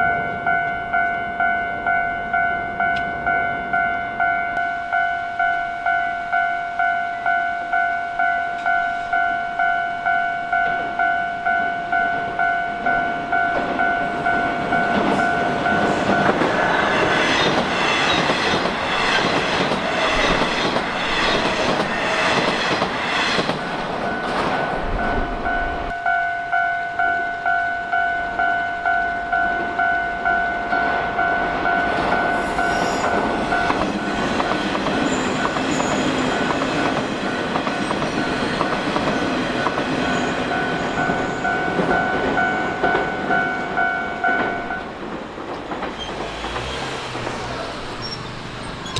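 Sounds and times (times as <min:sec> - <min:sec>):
train rushing past: 0:11.9 - 0:25.9, 0:28.3 - 0:48.9
wheels clacking over rail joints: 0:13.5 - 0:25.2, 0:30.7 - 0:48.9
level crossing bell dinging: 0:24.1 - 0:34.2.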